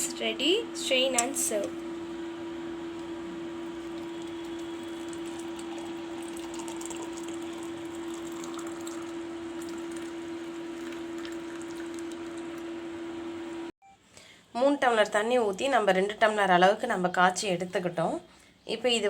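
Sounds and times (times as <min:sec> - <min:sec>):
loud steady hum: 0:00.0 - 0:08.2
liquid trickling and dripping: 0:03.0 - 0:12.6.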